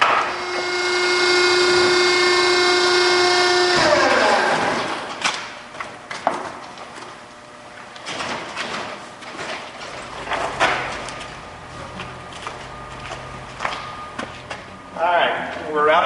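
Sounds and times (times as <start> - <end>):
hydraulic power unit whining: 0.0 - 16.0.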